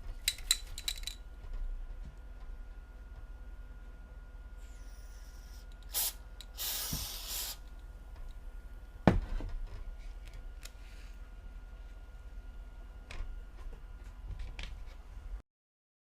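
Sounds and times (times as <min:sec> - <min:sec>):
aerosol can spraying: 0:05.4 - 0:07.7.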